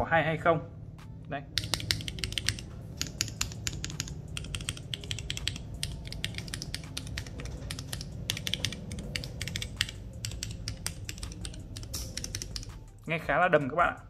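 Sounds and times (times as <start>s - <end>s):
mechanical keyboard typing: 1.6s - 12.8s.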